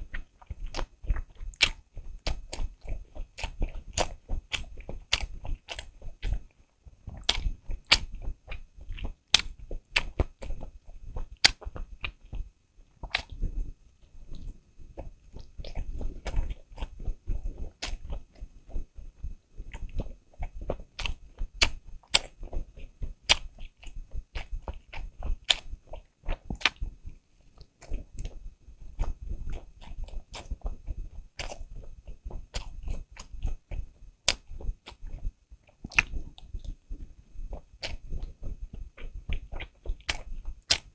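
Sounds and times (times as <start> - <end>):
chewing and crunching: 0.0 - 40.9.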